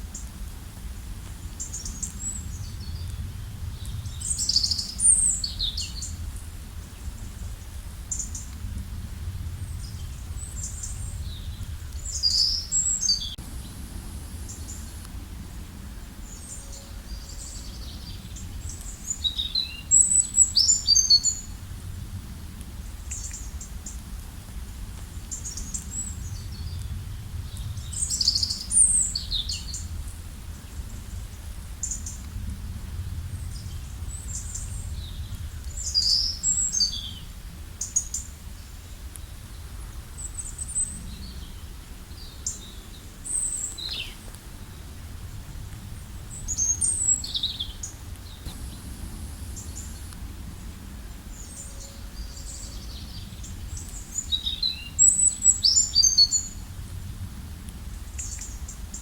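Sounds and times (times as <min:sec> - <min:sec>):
steady low rumble: 0:00.0 - 0:38.5, 0:40.8 - 0:55.0
songbirds chirping and trilling: 0:01.5 - 0:08.6, 0:09.6 - 0:21.6, 0:46.0 - 0:56.7.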